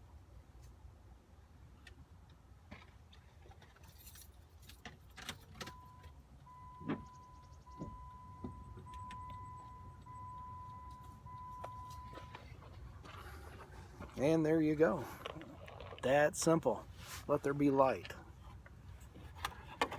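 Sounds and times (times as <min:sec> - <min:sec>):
dashboard warning chime beeps: 0:05.7 - 0:12.6.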